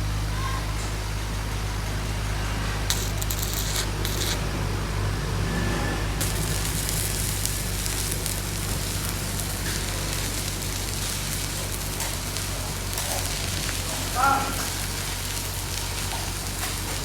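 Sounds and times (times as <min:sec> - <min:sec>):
constant low hum: 0:00.0 - 0:17.0
welding arc crackling and sizzling: 0:01.8 - 0:17.0.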